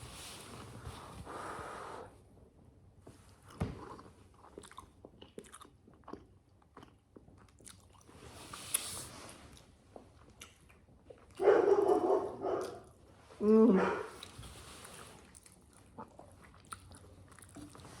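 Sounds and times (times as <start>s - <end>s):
chewing and wet mouth sounds: 3.1s - 11.5s, 12.4s - 13.1s, 14.1s - 18.0s.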